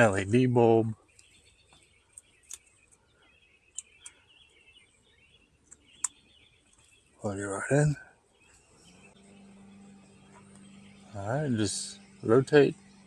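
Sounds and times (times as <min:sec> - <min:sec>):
birds chirping: 0:00.0 - 0:13.0
bulb handling clicks: 0:03.7 - 0:04.2.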